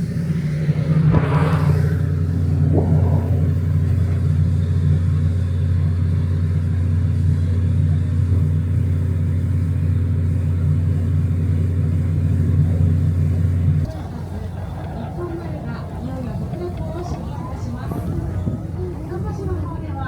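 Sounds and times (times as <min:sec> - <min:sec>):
rushing swell: 0:00.0 - 0:05.7
engine running: 0:00.0 - 0:20.0.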